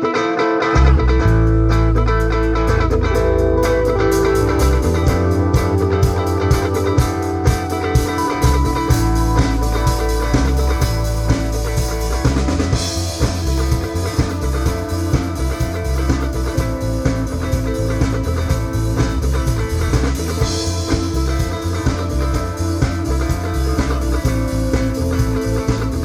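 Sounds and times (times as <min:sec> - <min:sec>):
bass guitar: 0:00.0 - 0:26.0
electric guitar: 0:00.0 - 0:26.0
drum kit beat: 0:01.4 - 0:26.0.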